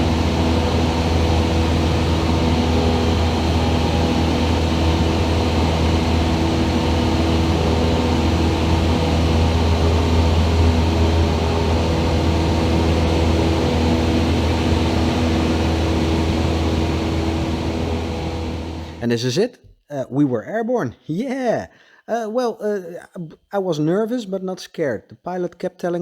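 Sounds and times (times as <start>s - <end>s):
light aircraft engine drone: 0.0s - 19.0s.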